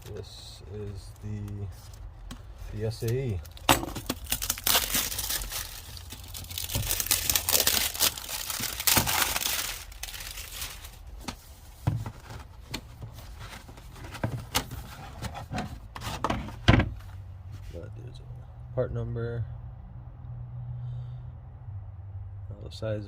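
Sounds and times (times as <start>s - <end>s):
plastic crinkling: 3.0s - 11.4s.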